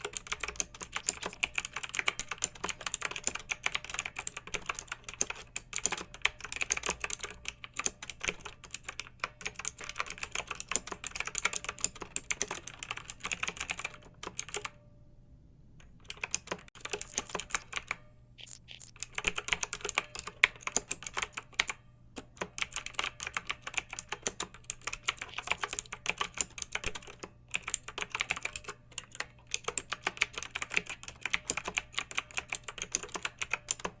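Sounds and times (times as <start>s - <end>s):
typing on computer keyboard: 0.0s - 14.8s, 15.8s - 34.0s.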